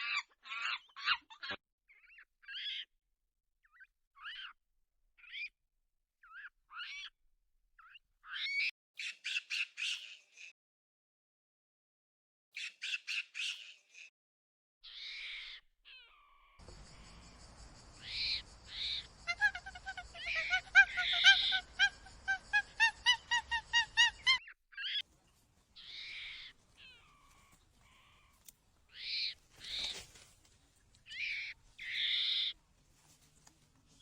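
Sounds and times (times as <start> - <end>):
harsh animal squawks: 0.0 - 2.9, 14.8 - 17.1, 18.0 - 25.0, 25.8 - 30.3, 31.0 - 32.6.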